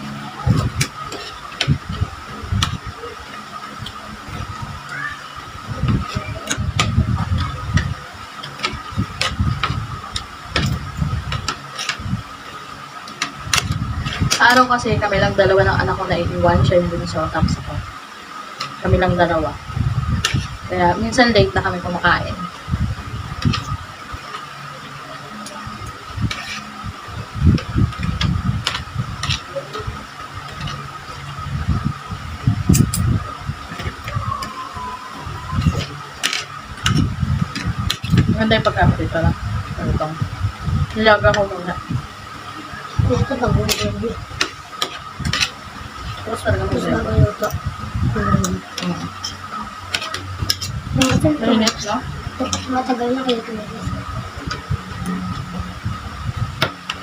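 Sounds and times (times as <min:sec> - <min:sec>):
steady electric hum: 0:00.0 - 0:57.0
utensils clicking against plate: 0:05.9 - 0:12.1, 0:13.0 - 0:15.4, 0:18.5 - 0:19.3, 0:20.2 - 0:20.6, 0:25.4 - 0:26.8, 0:27.5 - 0:31.4, 0:35.2 - 0:38.8, 0:43.6 - 0:47.6, 0:48.4 - 0:53.5.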